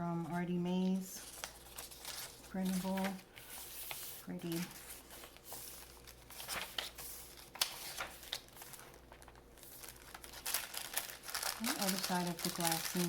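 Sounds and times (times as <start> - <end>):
paper rustling and crinkling: 0.2 - 13.0.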